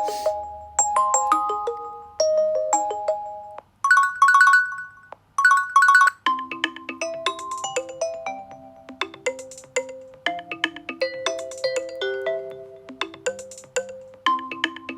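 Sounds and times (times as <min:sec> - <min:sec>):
electronic phone ringtones: 0:03.4 - 0:08.8.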